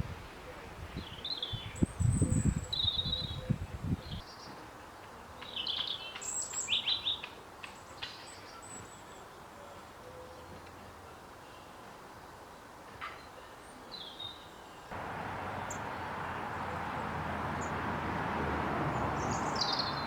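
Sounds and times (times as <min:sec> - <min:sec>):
small birds chirping: 0:13.9 - 0:20.0.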